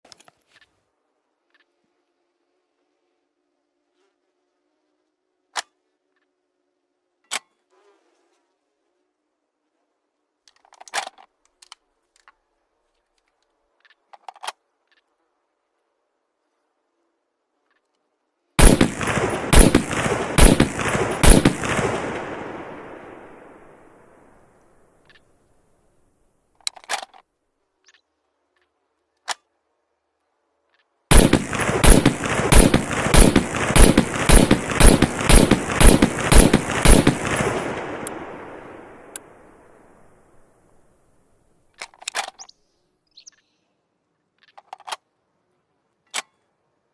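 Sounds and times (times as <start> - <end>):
rifle mechanical clicks: 18.6 - 23.8, 31.1 - 39.3.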